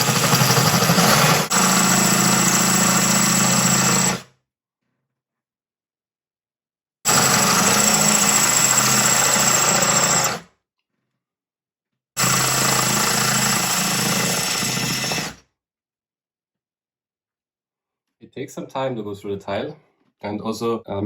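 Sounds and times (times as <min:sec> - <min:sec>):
electric drill grinding into tile: 0:00.0 - 0:04.3, 0:07.1 - 0:10.5, 0:12.2 - 0:15.4.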